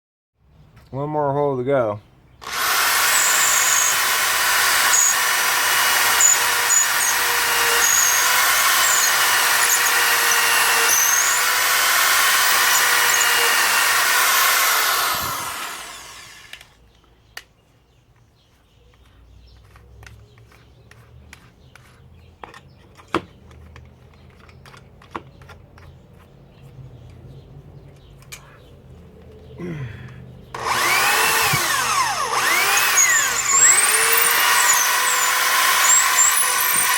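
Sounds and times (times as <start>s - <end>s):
power drill boring into wood: 2.4s - 16.8s, 30.6s - 36.9s.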